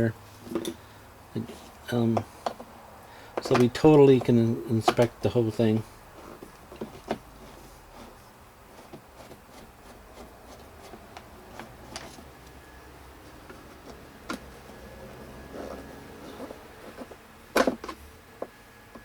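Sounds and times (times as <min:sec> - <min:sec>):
plastic parts clicking: 0:03.4 - 0:04.3.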